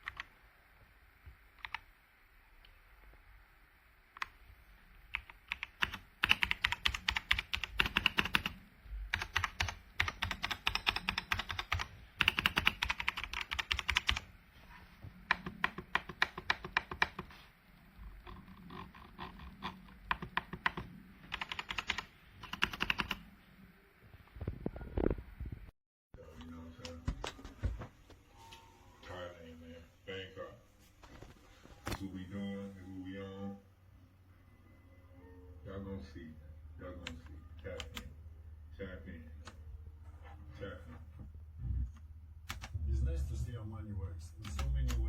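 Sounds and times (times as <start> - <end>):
mechanical keyboard typing: 1.6 - 1.8, 5.1 - 14.3, 15.3 - 17.3, 18.2 - 23.2, 37.0 - 38.1, 42.5 - 42.7.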